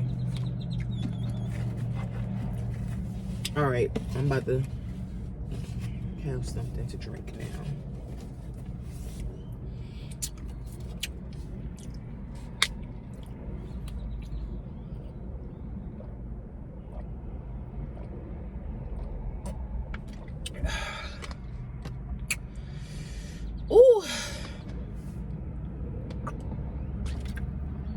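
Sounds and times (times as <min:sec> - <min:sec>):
car interior rumble: 0:00.0 - 0:27.9
breathy exhale: 0:22.5 - 0:24.7.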